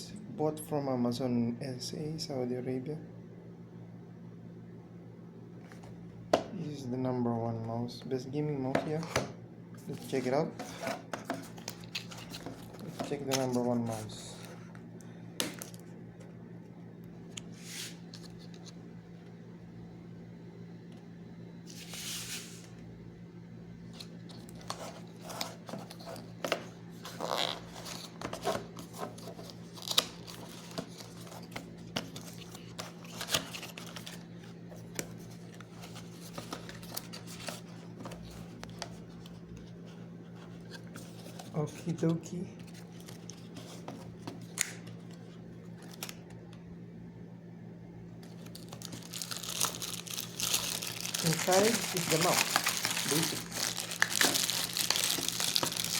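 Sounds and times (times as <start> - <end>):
packaging being handled: 9.9 - 14.4, 23.9 - 39.4, 48.2 - 55.9.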